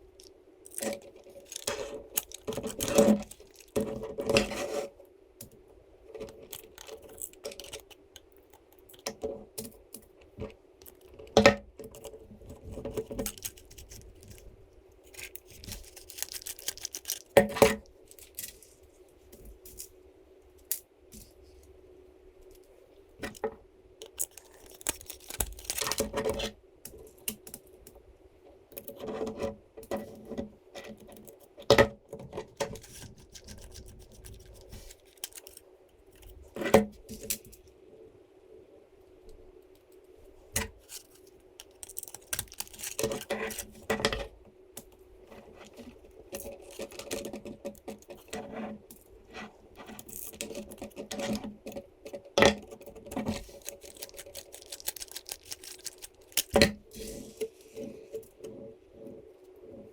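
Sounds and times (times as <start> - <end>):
faint hum: 0.0 - 59.9
small hard parts clicking: 52.8 - 56.7.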